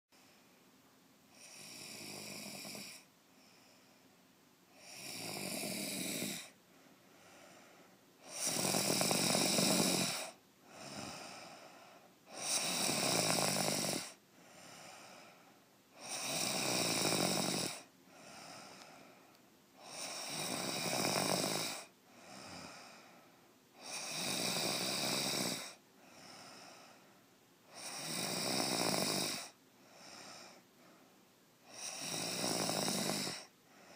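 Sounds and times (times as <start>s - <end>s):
woman snoring: 1.3s - 3.1s, 4.7s - 6.6s, 8.2s - 19.1s, 19.8s - 23.2s, 23.8s - 27.0s, 27.7s - 30.6s, 31.6s - 33.9s.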